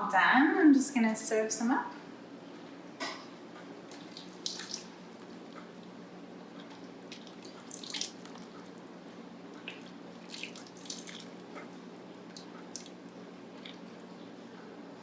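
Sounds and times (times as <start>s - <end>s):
soup splashing into bowl: 3.9s - 5.0s, 6.9s - 8.5s, 10.2s - 11.5s, 12.3s - 13.2s.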